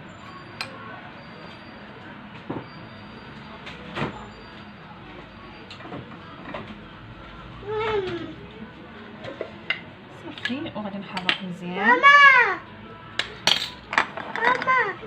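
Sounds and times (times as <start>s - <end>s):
kitchen utensils knocking: 13.2s - 14.8s.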